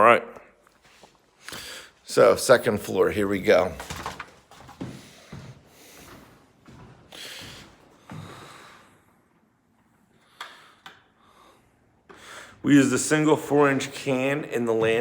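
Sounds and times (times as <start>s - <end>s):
heavy breathing through nose: 1.4s - 2.0s, 4.9s - 6.5s, 7.1s - 9.3s, 10.2s - 12.6s
footsteps on stairs: 3.6s - 8.8s.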